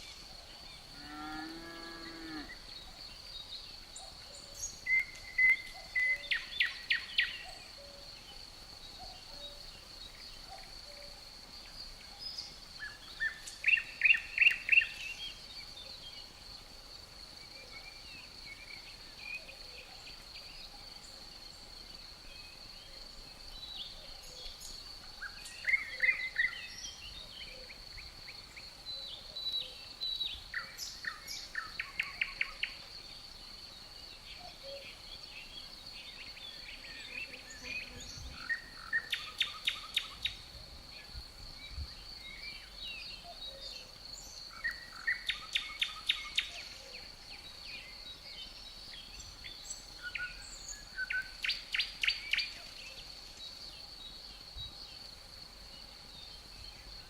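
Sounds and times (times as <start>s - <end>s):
songbirds singing: 0.0s - 16.6s, 17.2s - 57.0s
crickets chirping drone: 0.0s - 57.0s.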